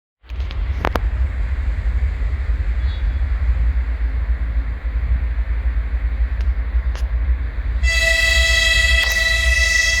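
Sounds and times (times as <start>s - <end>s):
low rumble: 0.2s - 10.0s
locomotive horn blast: 7.8s - 10.0s.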